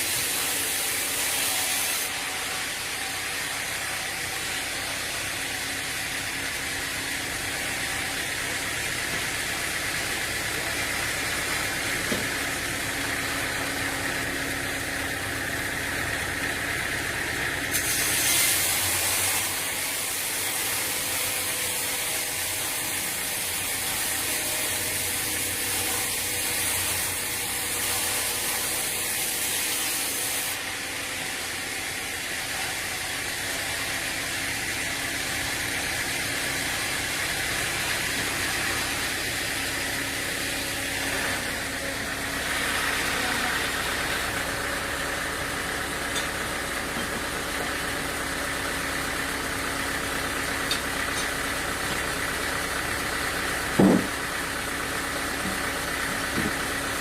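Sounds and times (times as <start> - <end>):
sawmill machinery humming: 0.0 - 57.0
hiss: 17.7 - 30.6
sharp knock: 53.8 - 54.1.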